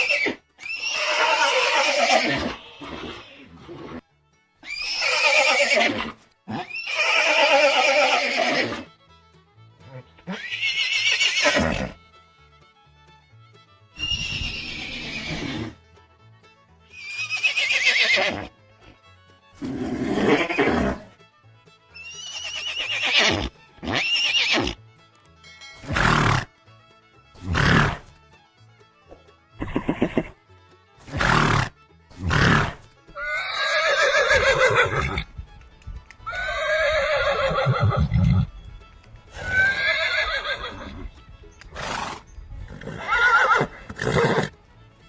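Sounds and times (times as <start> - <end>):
horse whinnying: 0.0 - 4.0, 4.6 - 8.9, 9.9 - 12.0, 14.0 - 15.8, 16.9 - 18.5, 19.6 - 21.2, 22.0 - 24.8, 25.8 - 26.5, 27.4 - 28.1, 29.6 - 30.4, 31.0 - 35.3, 36.3 - 38.5, 39.3 - 41.1, 41.7 - 44.5
background music: 0.0 - 45.0.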